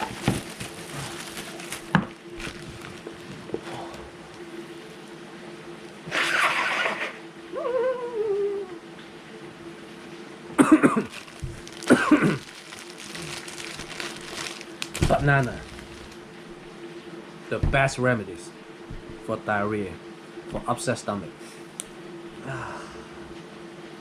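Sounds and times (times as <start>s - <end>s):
steady low hum: 0.0s - 6.2s, 7.0s - 24.0s
wavering hum-like vocal sound: 3.5s - 4.8s, 6.0s - 9.2s, 22.3s - 23.4s
man coughing: 10.6s - 11.1s, 11.8s - 12.4s.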